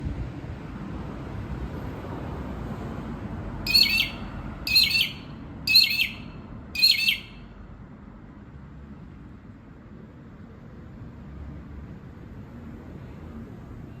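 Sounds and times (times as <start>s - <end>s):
young magpie calling: 3.7s - 7.4s.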